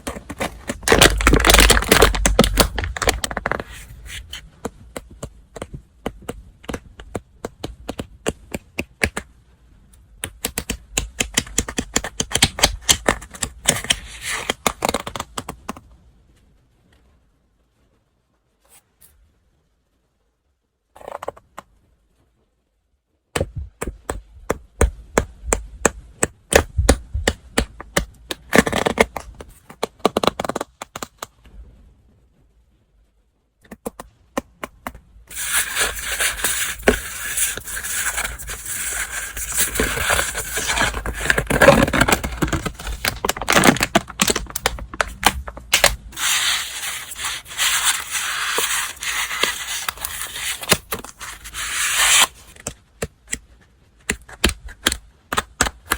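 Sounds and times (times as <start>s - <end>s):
wrapping rustling and crinkling: 0.0s - 4.6s, 35.3s - 52.7s
paper crackling: 0.0s - 4.7s, 35.3s - 52.7s.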